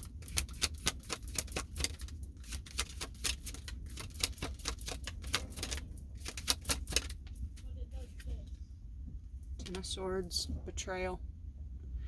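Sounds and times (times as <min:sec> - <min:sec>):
cards being shuffled: 0:00.0 - 0:07.3.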